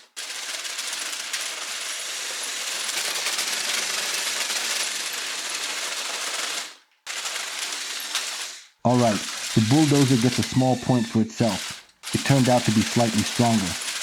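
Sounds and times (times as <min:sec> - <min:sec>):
plastic tracks grinding on stones: 0:07.1 - 0:14.0.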